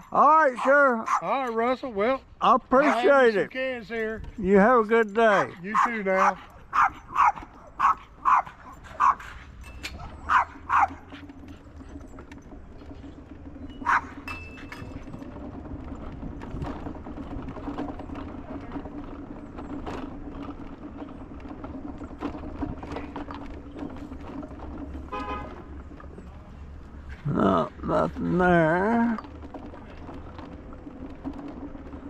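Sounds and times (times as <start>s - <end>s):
dog barking: 0.6s - 1.3s, 5.7s - 9.3s, 10.0s - 11.0s, 13.8s - 14.2s
low motor hum: 2.2s - 32.0s.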